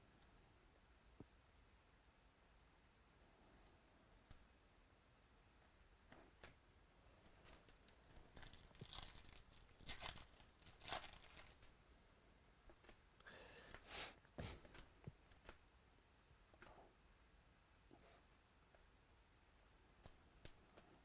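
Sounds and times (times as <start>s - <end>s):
cards being handled: 7.2s - 11.7s
foil wrapper tearing and crinkling: 7.5s - 11.7s.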